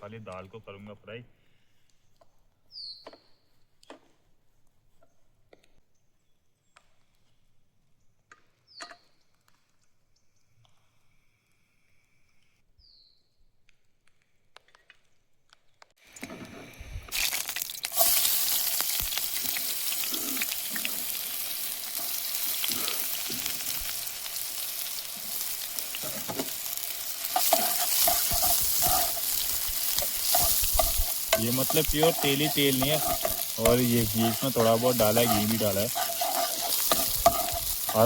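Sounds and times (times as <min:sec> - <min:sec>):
food sizzling in oil: 0:17.1 - 0:38.0
stirring in a pan: 0:17.2 - 0:38.0.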